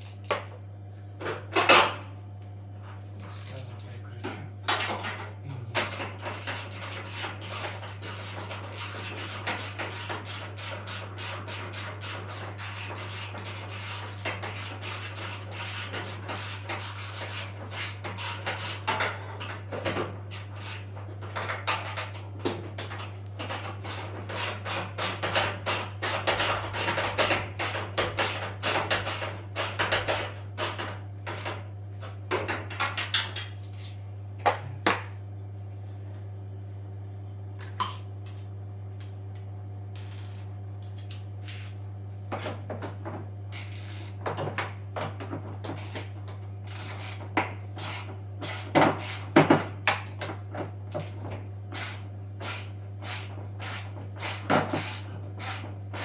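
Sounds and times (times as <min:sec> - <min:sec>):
steady low hum: 0:00.0 - 0:07.1, 0:29.8 - 0:43.9.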